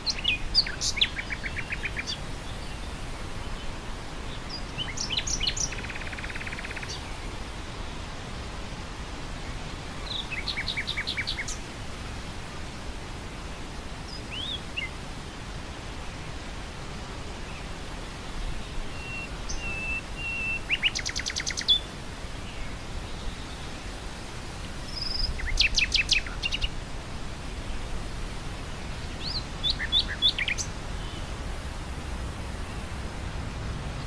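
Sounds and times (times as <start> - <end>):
nightingale singing: 0.0 - 2.9, 4.4 - 7.1, 10.0 - 11.6, 14.1 - 15.0, 18.9 - 21.9, 24.9 - 26.8, 29.2 - 31.3
wind through grassland: 0.0 - 34.0.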